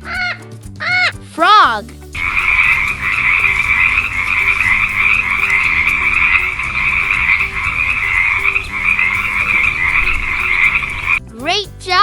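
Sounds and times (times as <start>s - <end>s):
frog croaking: 2.2s - 11.2s.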